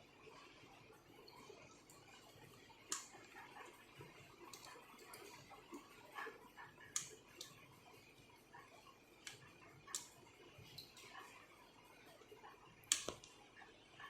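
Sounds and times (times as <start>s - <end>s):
small clicks and taps of tools: 9.2s - 10.2s, 12.9s - 13.4s.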